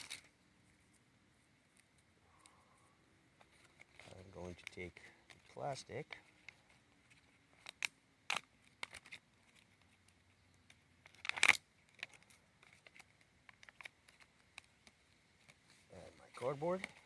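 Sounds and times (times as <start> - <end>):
duct tape ripping: 0.0 - 0.3, 7.5 - 9.7, 11.0 - 14.7
plastic clicking and crinkling: 3.4 - 17.0.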